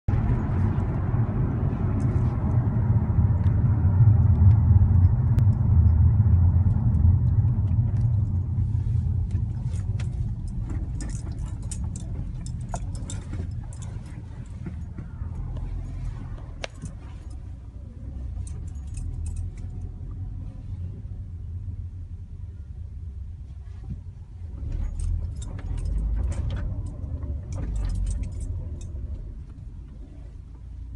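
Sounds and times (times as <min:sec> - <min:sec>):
car driving low rumble: 0:00.0 - 0:30.9
suspension clicks and knocks: 0:03.2 - 0:20.2, 0:23.9 - 0:30.9.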